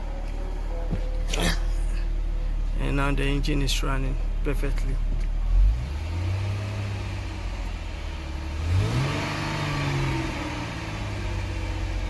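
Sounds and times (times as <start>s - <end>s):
car engine idling and revving: 0.0s - 12.0s.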